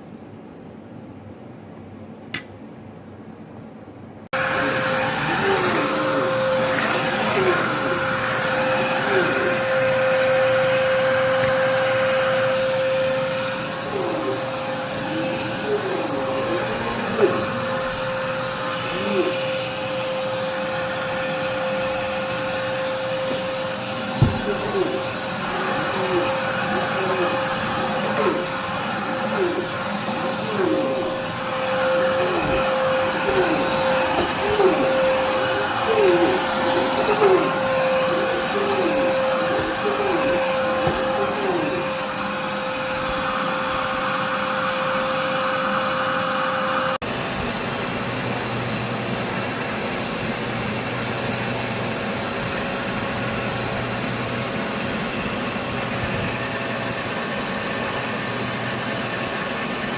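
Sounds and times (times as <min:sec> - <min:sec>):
machine humming: 0:04.4 - 0:45.6.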